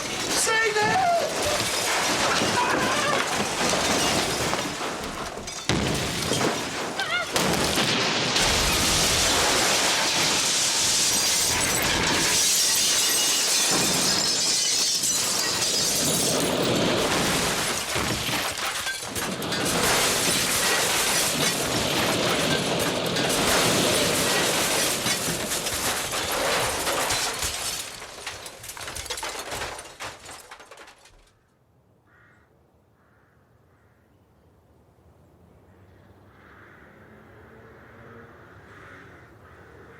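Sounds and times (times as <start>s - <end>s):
glass shattering: 0.0s - 31.2s
debris crashing down: 0.0s - 31.3s.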